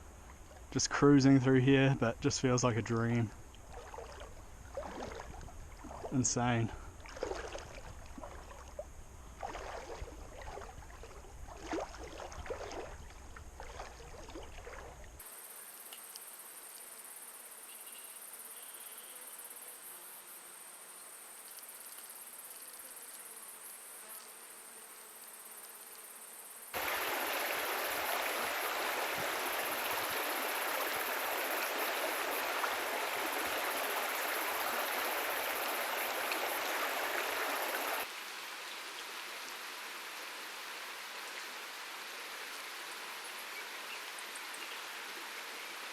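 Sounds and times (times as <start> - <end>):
splashing of wading in river: 3.6 - 6.2, 7.0 - 15.2, 26.8 - 38.1
rush of flowing river: 3.7 - 6.4, 7.0 - 8.8, 9.4 - 15.0, 26.8 - 44.2
steady hiss: 15.2 - 43.4.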